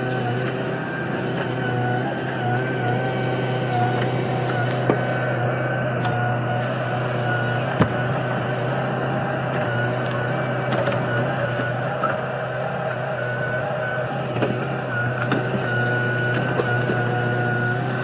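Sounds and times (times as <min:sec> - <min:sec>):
backhoe engine running: 0:00.0 - 0:18.0.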